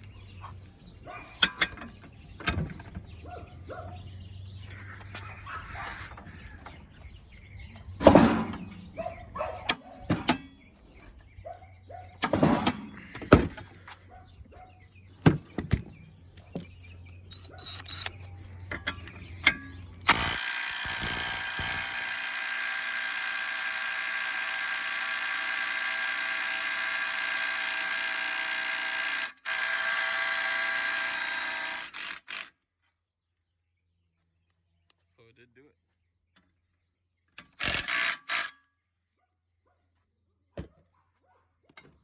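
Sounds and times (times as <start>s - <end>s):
tools clattering: 1.3s - 3.0s, 8.0s - 9.1s, 17.6s - 20.3s.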